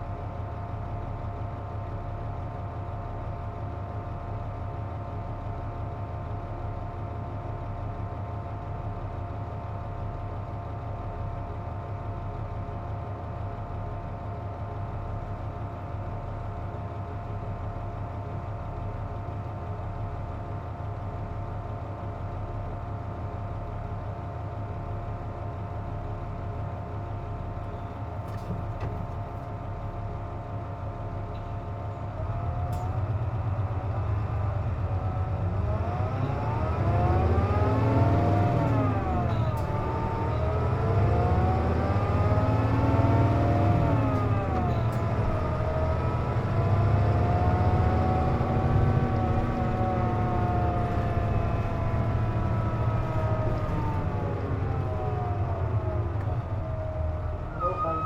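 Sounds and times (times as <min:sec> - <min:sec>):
bus diesel engine whining: 0:12.8 - 0:58.0.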